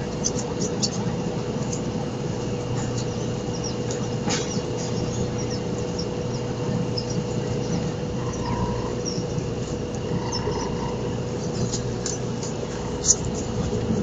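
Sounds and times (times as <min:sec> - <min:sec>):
ferry engine drone: 0:00.0 - 0:14.0
wind noise: 0:03.8 - 0:14.0.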